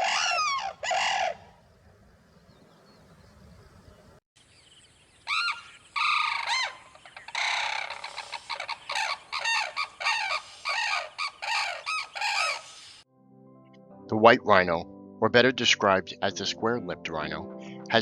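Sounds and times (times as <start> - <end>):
cranes calling: 0.0 - 4.1, 5.2 - 13.0.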